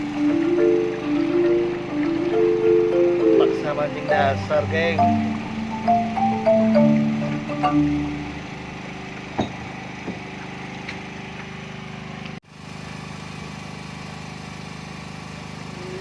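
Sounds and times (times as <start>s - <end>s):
mallet percussion music: 0.0s - 8.9s
boat engine running: 0.0s - 12.4s.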